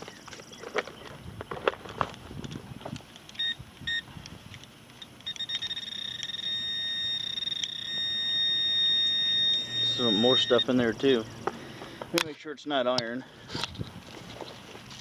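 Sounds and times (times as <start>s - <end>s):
handling clicks and scrapes in dirt: 0.0s - 8.4s, 9.7s - 10.8s, 11.4s - 15.0s
short beeps: 3.4s - 4.1s, 5.0s - 11.3s
pulsing tone becoming steady high tone: 5.0s - 11.4s.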